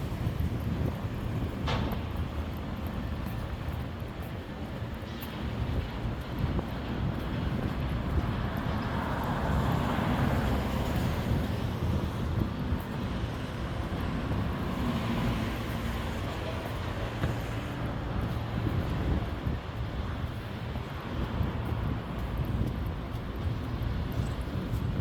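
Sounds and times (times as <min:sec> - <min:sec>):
road traffic rumble: 0:00.0 - 0:25.0.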